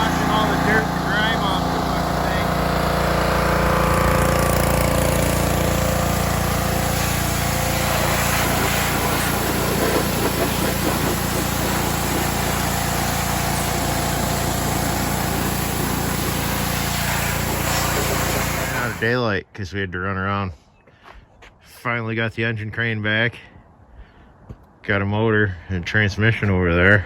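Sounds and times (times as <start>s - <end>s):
pressure washer engine running: 0.0s - 19.1s
wand spraying water: 4.1s - 19.0s.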